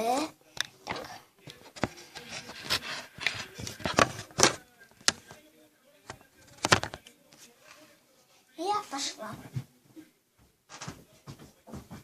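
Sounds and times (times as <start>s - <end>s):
soft rubbing: 1.6s - 5.4s.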